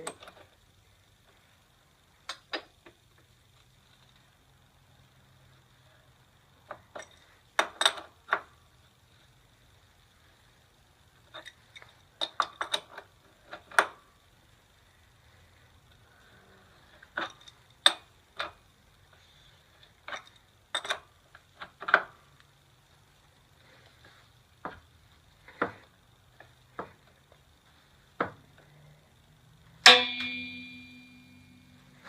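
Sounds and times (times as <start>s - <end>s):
metal wrenches clinking: 20.0s - 21.1s
loud ringing metal clang: 29.8s - 31.7s.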